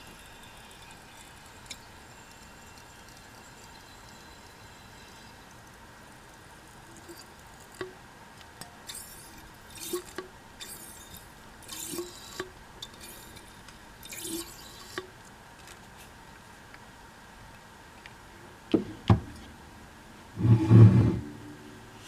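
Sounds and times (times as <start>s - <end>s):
shock absorber squelching oil flow: 8.9s - 15.1s.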